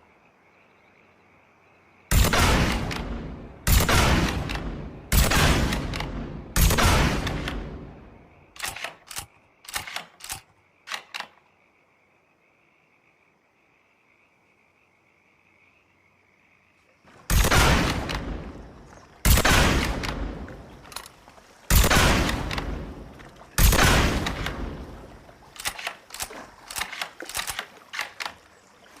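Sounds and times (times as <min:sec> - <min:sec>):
rifle gunshots: 0:02.1 - 0:07.9, 0:17.3 - 0:18.6, 0:19.2 - 0:20.7, 0:21.7 - 0:25.0
sharp clicks and knocks: 0:08.6 - 0:11.4.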